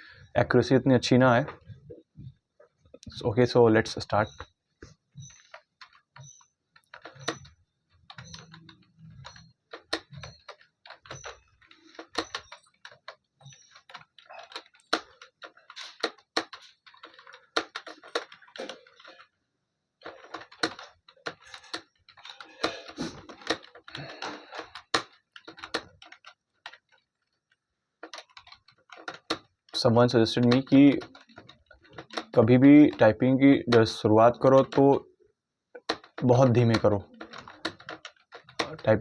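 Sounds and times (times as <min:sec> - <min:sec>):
keyboard typing clicks: 0:04.1 - 0:19.3, 0:28.0 - 0:35.0, 0:35.8 - 0:39.0.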